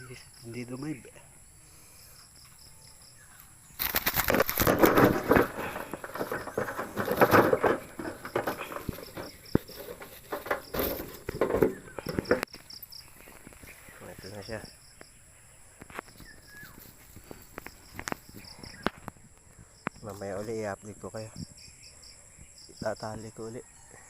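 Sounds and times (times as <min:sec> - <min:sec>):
crickets chirping: 0:00.0 - 0:24.0
dove flapping wings: 0:03.8 - 0:12.3.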